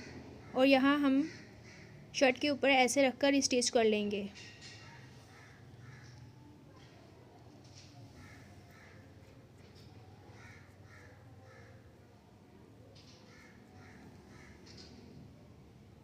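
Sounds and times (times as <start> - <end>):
crows cawing: 1.2 - 2.0, 5.2 - 6.2, 8.2 - 9.2, 10.3 - 11.9, 13.2 - 15.0.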